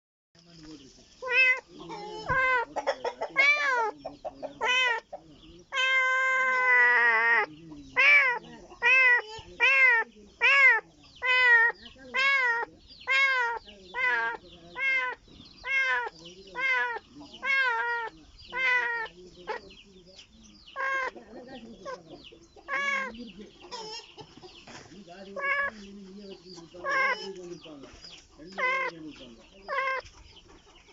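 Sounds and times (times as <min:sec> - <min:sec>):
kitten meowing: 0:01.2 - 0:02.7, 0:05.7 - 0:19.1, 0:20.8 - 0:21.2, 0:22.7 - 0:23.2, 0:29.7 - 0:30.0.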